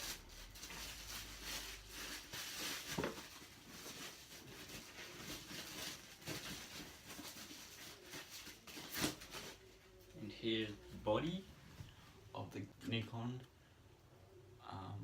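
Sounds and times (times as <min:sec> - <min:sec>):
packaging rustling: 0:00.0 - 0:09.8.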